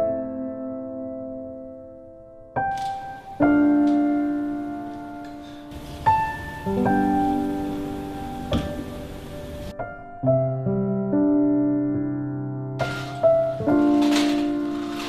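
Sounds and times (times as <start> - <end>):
slow piano music: 0.0 - 15.0
faint hiss: 2.8 - 9.8.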